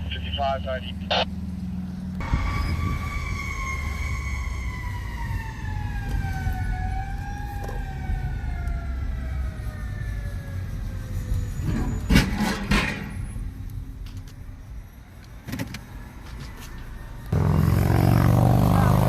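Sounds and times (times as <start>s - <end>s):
truck engine rumble: 0.0s - 19.0s
fire truck siren winding down: 2.2s - 12.1s.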